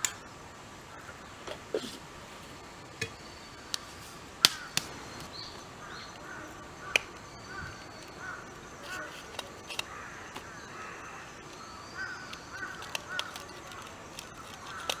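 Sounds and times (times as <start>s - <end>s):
dry twigs snapping: 3.0s - 15.0s.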